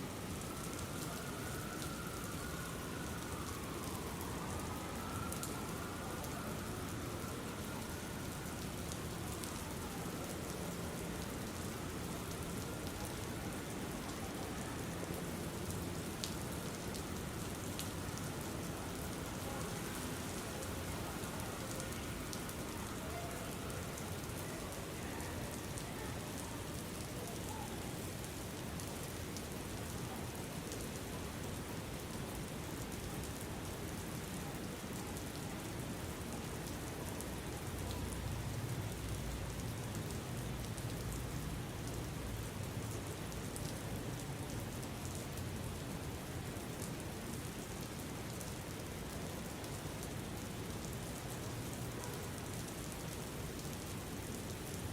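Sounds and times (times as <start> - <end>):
steady rain: 0.0 - 54.9
rain drop ticks: 0.4 - 14.2, 14.8 - 27.6.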